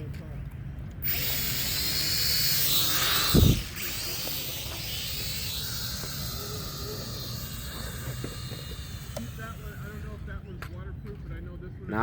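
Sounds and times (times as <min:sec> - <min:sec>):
steady rushing hiss: 0:01.0 - 0:10.2
electric motors whining: 0:01.0 - 0:10.4.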